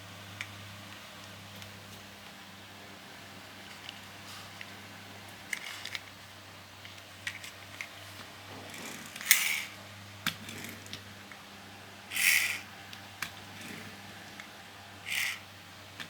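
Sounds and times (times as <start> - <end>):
plastic scraping rattle: 15.1 - 15.4.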